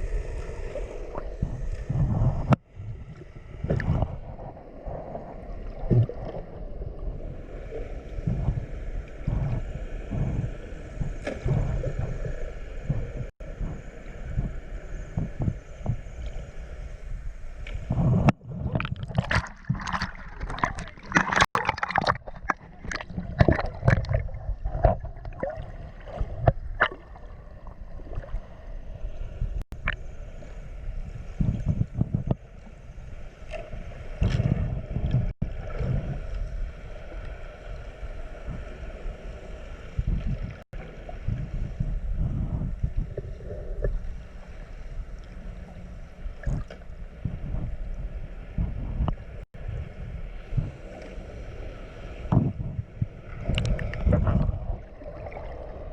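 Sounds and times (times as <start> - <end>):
muffled underwater rumble: 0.0 - 55.9
bubbling bursts: 18.0 - 27.7.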